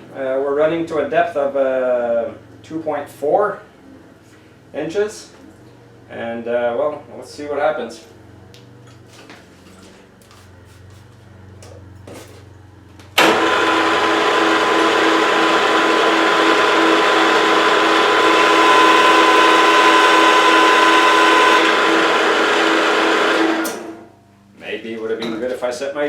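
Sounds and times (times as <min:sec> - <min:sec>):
milling machine running: 0:13.2 - 0:24.1.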